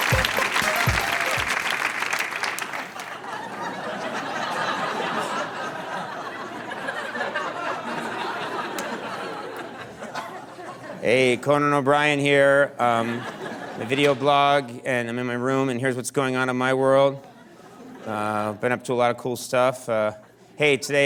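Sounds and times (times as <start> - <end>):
band music: 0.0 - 1.6
audience applauding: 0.0 - 5.5
audience laughter: 0.0 - 11.4, 12.9 - 14.4, 17.2 - 18.6.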